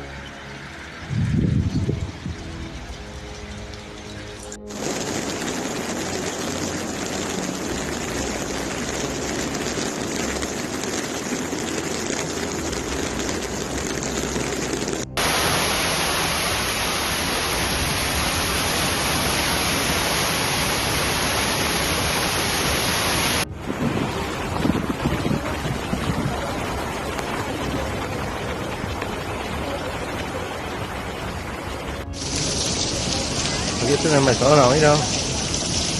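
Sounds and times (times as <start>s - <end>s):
running water: 0.0s - 35.9s
storm rain: 0.0s - 35.9s
hissy rushing noise: 4.7s - 26.6s, 32.1s - 35.9s.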